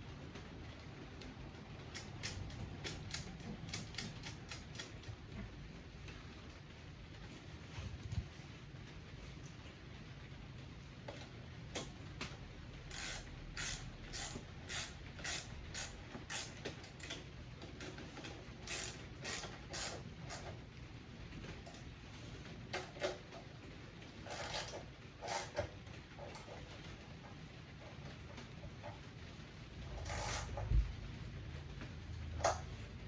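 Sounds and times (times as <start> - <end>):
hand tools clicking and scraping metal: 12.9 - 17.2, 18.6 - 20.5, 24.3 - 25.7.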